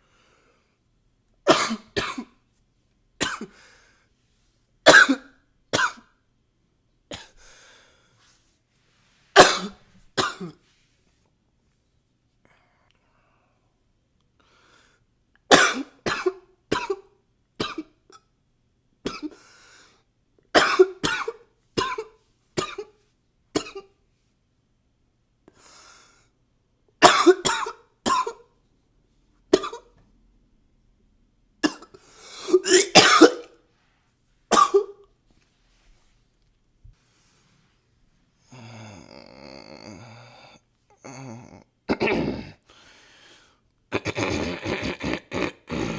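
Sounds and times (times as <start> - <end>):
man coughing: 4.9 - 5.2, 9.4 - 10.6, 27.0 - 28.4, 31.6 - 33.6, 34.5 - 35.0, 41.9 - 42.6, 44.0 - 45.9.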